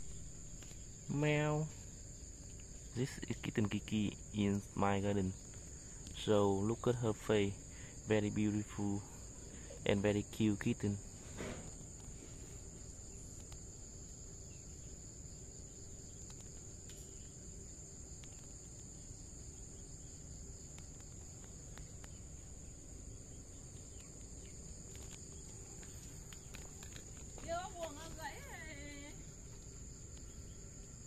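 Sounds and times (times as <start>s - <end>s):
crickets trilling: 0.0s - 31.0s.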